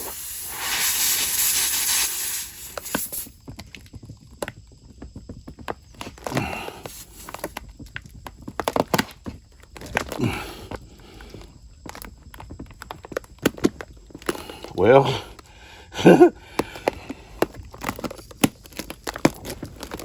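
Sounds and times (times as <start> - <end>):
steady hiss: 0.0 - 3.5, 6.2 - 7.7.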